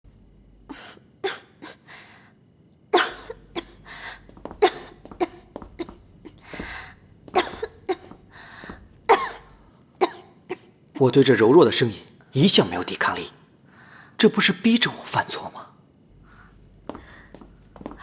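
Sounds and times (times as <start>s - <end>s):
woman coughing weakly: 3.0s - 6.0s, 7.3s - 10.7s.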